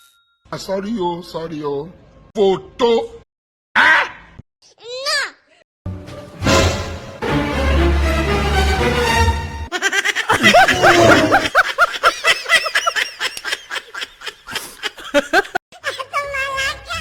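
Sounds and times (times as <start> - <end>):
music: 5.9 - 9.7
person snickering: 9.8 - 12.0.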